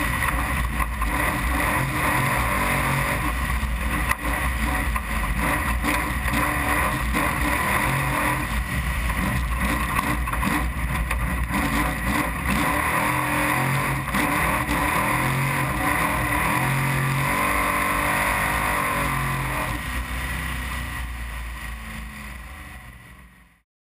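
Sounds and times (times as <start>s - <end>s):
race engine revving: 0.0s - 23.0s.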